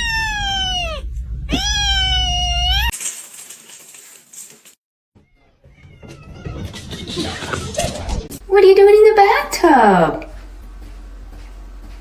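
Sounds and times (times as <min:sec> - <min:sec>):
cat meowing: 0:00.0 - 0:02.9, 0:05.2 - 0:06.8.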